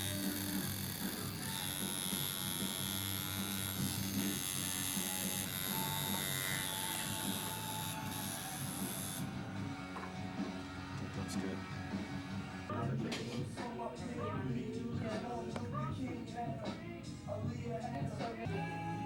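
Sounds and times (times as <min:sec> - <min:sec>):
tattoo machine buzzing: 0:00.0 - 0:12.6.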